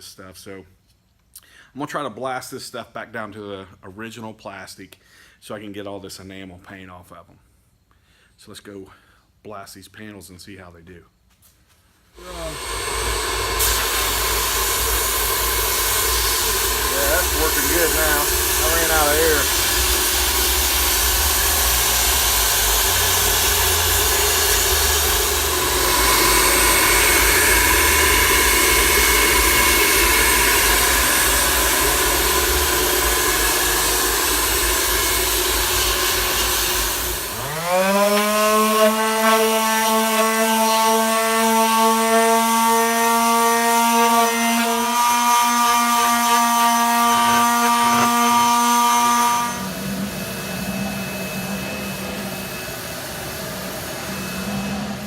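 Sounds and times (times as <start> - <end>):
compressed air blasting hiss: 12.2 - 54.6
motor whining: 12.2 - 55.0.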